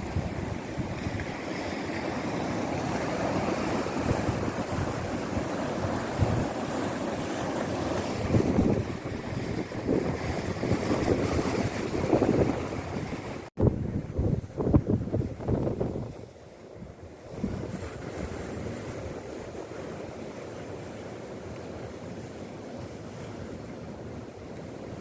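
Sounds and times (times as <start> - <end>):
wind buffeting microphone: 0.0 - 2.0, 2.6 - 19.1
sea waves breaking: 0.0 - 25.0.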